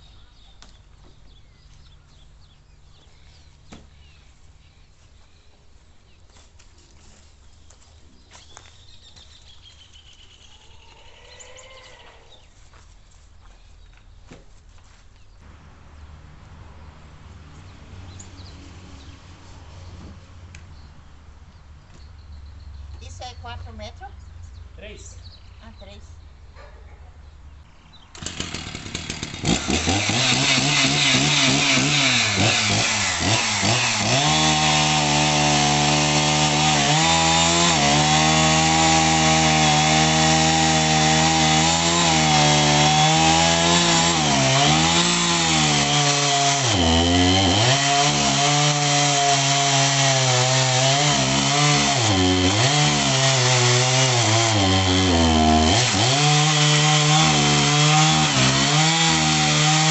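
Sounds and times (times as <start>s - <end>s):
chainsaw cutting logs: 28.0s - 59.9s.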